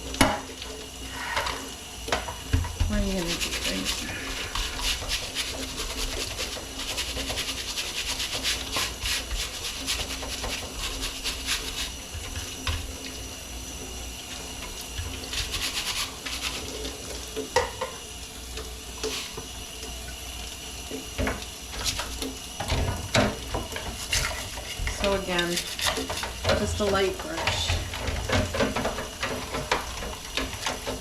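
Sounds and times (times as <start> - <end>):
water splashing from a tap: 0.0 - 31.0.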